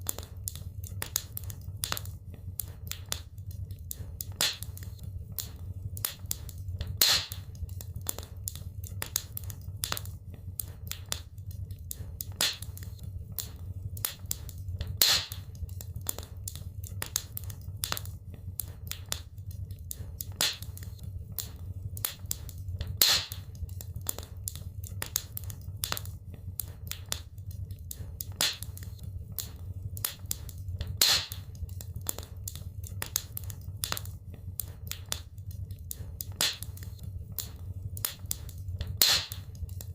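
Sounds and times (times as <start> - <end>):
low steady rumble: 0.0 - 39.9
wood fire crackling: 0.0 - 39.9
loud fire pop: 7.0 - 7.4, 15.0 - 15.4, 23.0 - 23.4, 31.0 - 31.4, 39.0 - 39.4.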